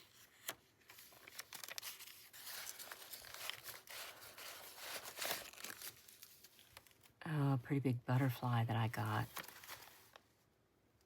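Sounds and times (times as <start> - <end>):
paper rustling and crinkling: 0.0 - 7.2, 9.0 - 10.5.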